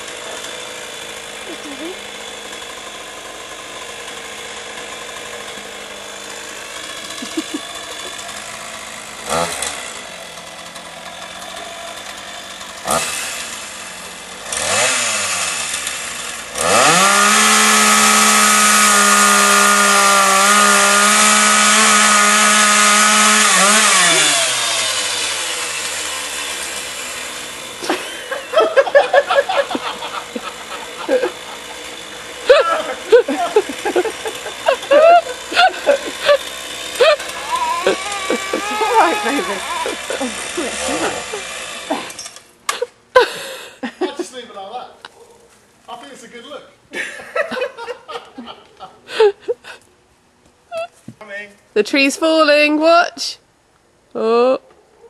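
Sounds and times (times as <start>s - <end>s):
chainsaw revving: 0.0s - 43.9s.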